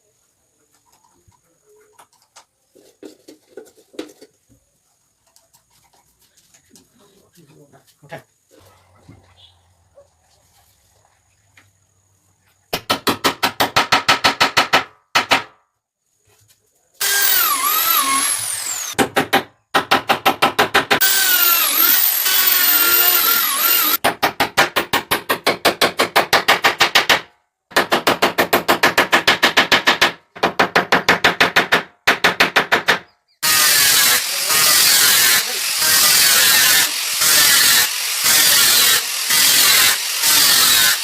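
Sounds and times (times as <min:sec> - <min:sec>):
power drill rattling: 0:17.0 - 0:19.0, 0:21.0 - 0:24.0.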